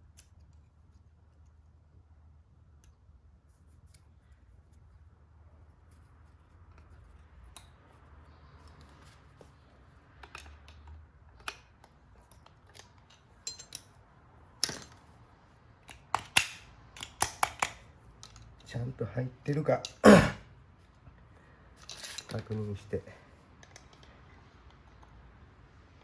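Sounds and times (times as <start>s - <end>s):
snap ring snapping into place: 15.8s - 18.4s.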